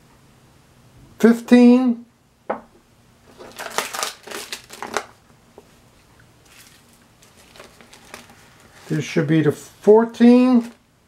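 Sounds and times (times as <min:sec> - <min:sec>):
packing wrap crinkling: 0:03.3 - 0:05.2, 0:06.4 - 0:09.2.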